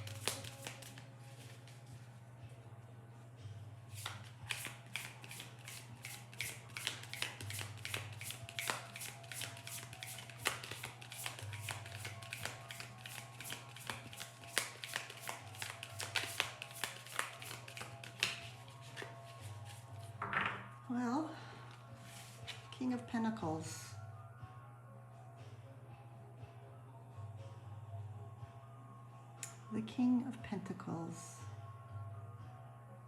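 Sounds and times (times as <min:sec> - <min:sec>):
cards being shuffled: 0:00.0 - 0:01.8, 0:03.9 - 0:19.9
soft background music: 0:00.0 - 0:33.0.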